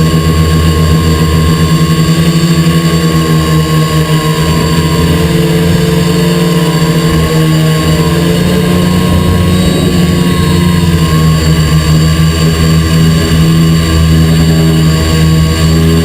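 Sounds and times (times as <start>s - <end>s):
quadcopter motors and propellers: 0.0s - 16.0s.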